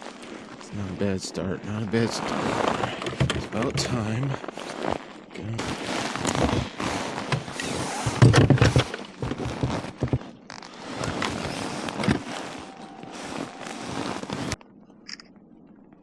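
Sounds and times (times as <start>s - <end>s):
scraping and knocks in kayak: 2.0s - 5.0s, 5.6s - 14.6s.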